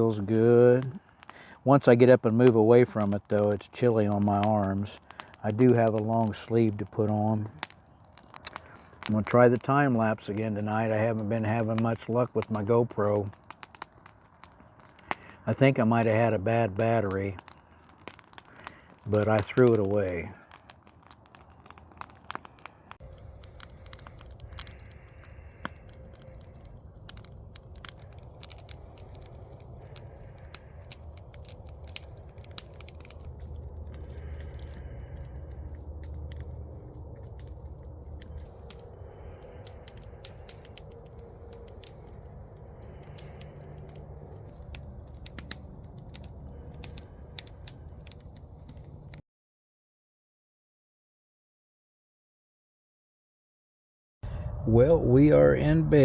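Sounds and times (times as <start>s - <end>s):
campfire crackling and popping: 0.0s - 49.2s, 54.2s - 56.0s
steady low rumble: 22.9s - 49.2s, 54.2s - 56.0s.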